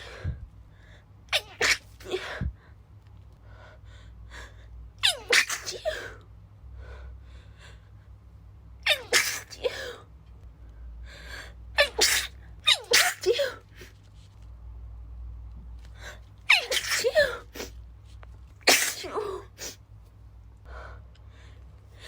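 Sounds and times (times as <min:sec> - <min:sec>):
woman's stifled sneezes: 0:01.3 - 0:02.5, 0:05.0 - 0:06.2, 0:08.8 - 0:10.0, 0:11.8 - 0:13.9, 0:16.5 - 0:17.8, 0:18.6 - 0:19.8.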